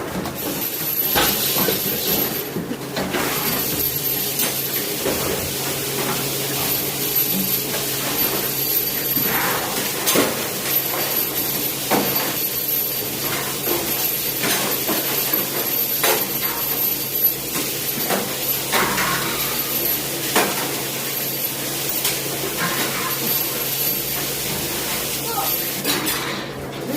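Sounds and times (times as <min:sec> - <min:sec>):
dishes and pots clattering: 0:13.1 - 0:21.0, 0:22.0 - 0:26.9.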